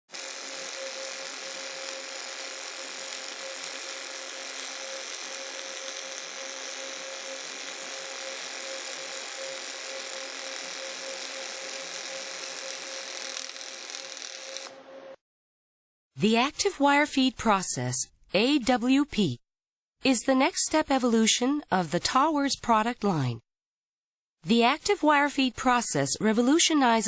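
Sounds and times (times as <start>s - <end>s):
welding arc hiss and crackle: 0.1s - 14.8s.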